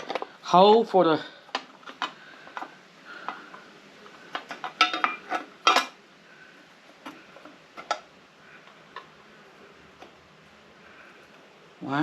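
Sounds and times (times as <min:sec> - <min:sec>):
metal parts clinking and clanking: 0:04.3 - 0:06.0.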